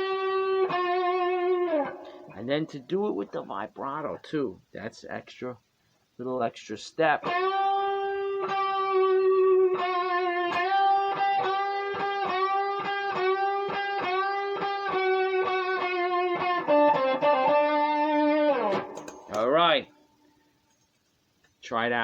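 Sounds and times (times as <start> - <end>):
electric guitar bending notes: 0.0 - 2.9, 7.2 - 19.6.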